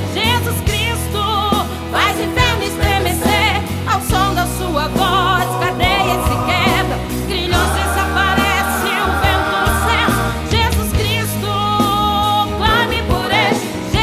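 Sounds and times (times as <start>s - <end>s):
gospel accompaniment with bass: 0.5s - 14.0s
woman singing vocal runs: 4.8s - 10.8s.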